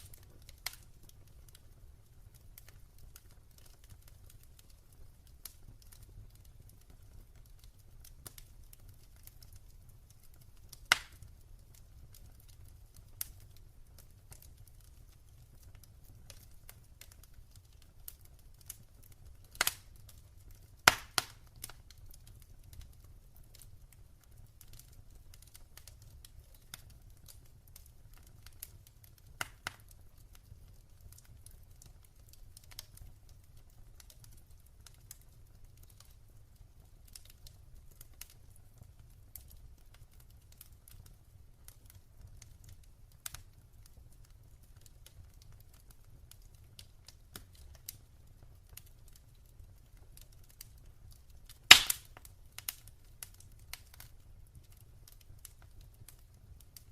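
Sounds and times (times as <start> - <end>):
fire pops: 0.0 - 29.9, 48.7 - 56.9
low rumble of flames: 0.0 - 56.9
wood fire crackling: 0.0 - 56.9.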